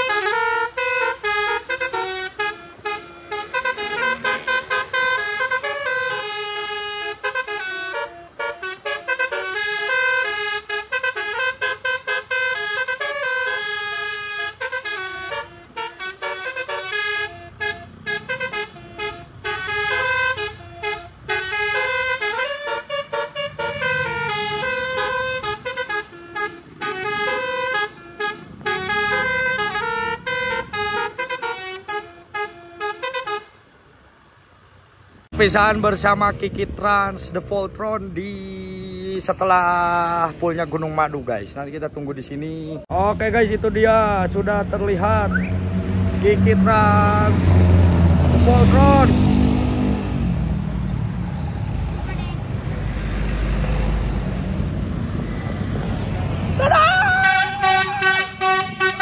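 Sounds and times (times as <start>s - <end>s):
bus multi-tone horn melody: 0.0s - 33.8s, 44.3s - 50.6s, 55.2s - 59.0s.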